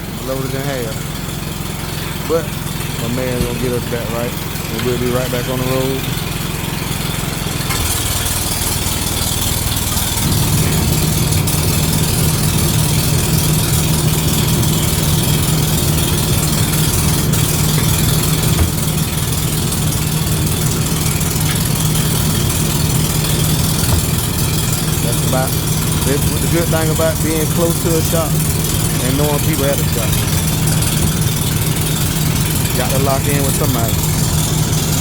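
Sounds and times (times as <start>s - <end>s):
truck engine idling: 0.0s - 35.0s.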